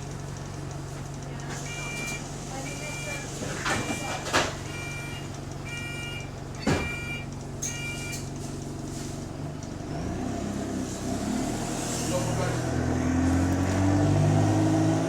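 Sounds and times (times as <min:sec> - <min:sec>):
bus diesel engine with exhaust leak: 0:00.0 - 0:15.0
multi-tone warning beep: 0:01.6 - 0:08.3.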